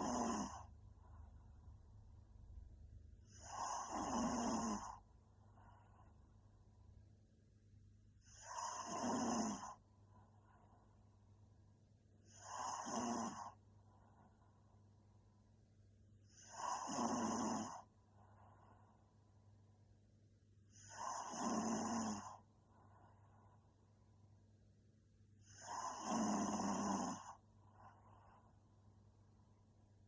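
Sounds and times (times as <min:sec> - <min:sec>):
woman snoring: 0:00.0 - 0:00.7, 0:03.2 - 0:05.0, 0:08.2 - 0:09.8, 0:12.2 - 0:13.6, 0:16.3 - 0:17.9, 0:20.7 - 0:22.4, 0:25.4 - 0:27.4.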